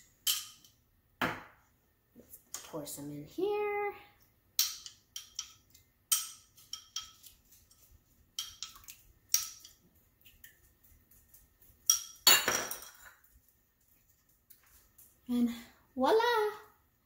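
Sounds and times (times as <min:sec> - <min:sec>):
utensil clinking against dish: 0:04.6 - 0:09.8.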